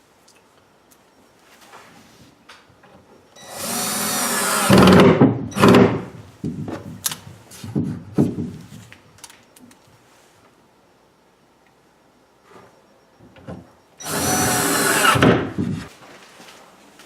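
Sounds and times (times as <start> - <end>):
power drill driving screw into wood: 3.4 - 6.1, 14.0 - 15.7
drill clicks: 14.0 - 15.6.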